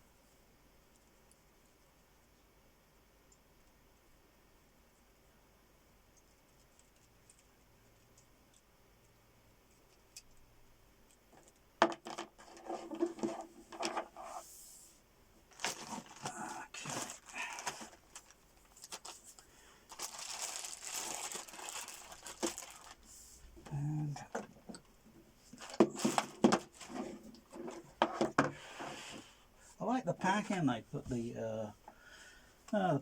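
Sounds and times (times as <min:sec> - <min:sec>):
small clicks and knocks: 0:06.1 - 0:14.1
packaging crinkling and rustling: 0:15.5 - 0:24.5, 0:25.5 - 0:28.4.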